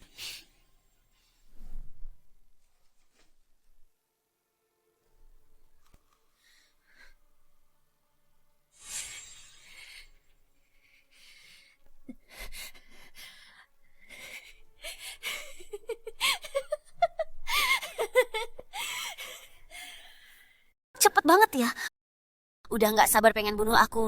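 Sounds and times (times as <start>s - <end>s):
person crying and whimpering: 14.1s - 19.6s.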